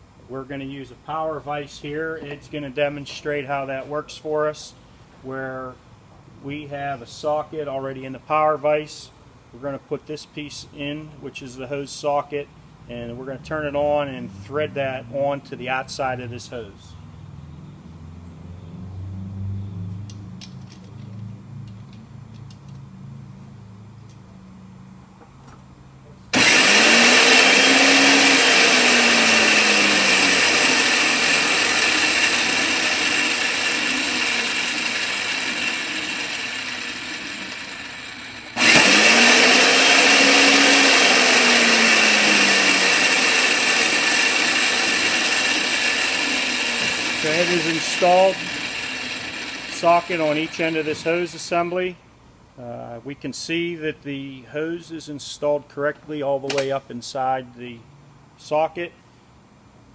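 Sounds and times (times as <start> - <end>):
electric vise motor whining: 26.3 - 51.5.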